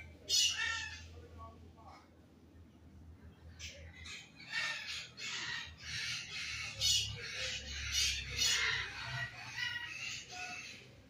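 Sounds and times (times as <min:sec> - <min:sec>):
birds squawking: 0:00.0 - 0:01.1, 0:03.6 - 0:11.0.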